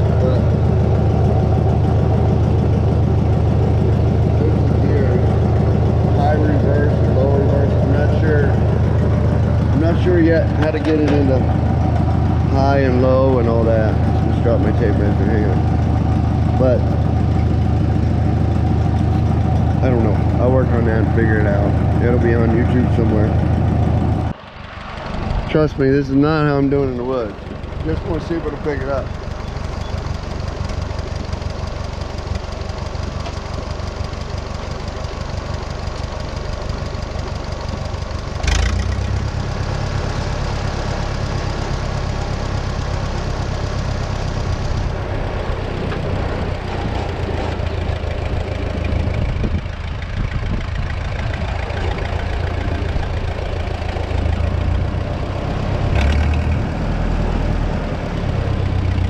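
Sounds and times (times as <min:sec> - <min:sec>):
tractor engine running: 0:00.0 - 0:59.0.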